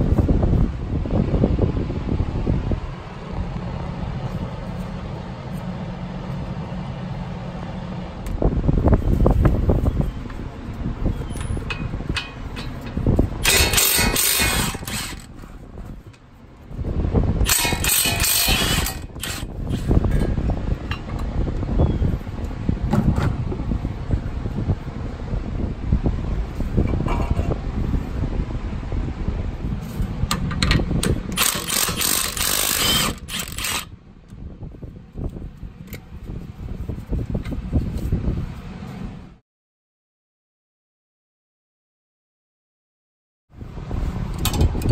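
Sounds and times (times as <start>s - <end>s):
low rumble: 0.0s - 39.4s
impact wrench hammering: 13.4s - 15.3s, 17.5s - 19.4s, 31.4s - 33.8s
power tool rapid rattle: 13.4s - 15.3s, 17.4s - 19.9s, 31.3s - 33.9s
sharp metallic clicks: 30.3s - 33.9s.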